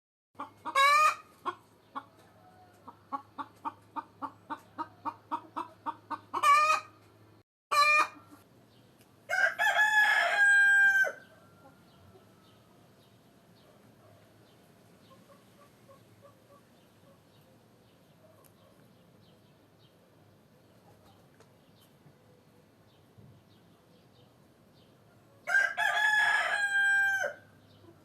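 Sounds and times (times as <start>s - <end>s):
hens cackling squawks: 0.4s - 7.0s, 7.7s - 8.4s
hens clucking: 0.4s - 8.5s, 15.0s - 17.2s
rooster crowing: 9.3s - 11.8s, 25.4s - 27.5s.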